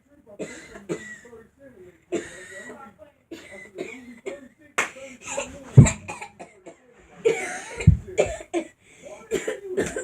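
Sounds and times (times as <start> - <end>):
boy coughing: 5.3 - 6.6, 7.3 - 8.7, 9.3 - 10.0
heavy thumps: 5.6 - 6.4, 7.8 - 8.5.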